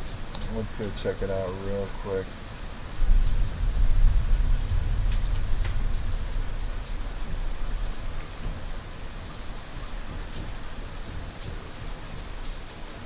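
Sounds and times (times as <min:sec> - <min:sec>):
rain falling: 0:00.0 - 0:13.0
deep low rumble: 0:03.0 - 0:08.2.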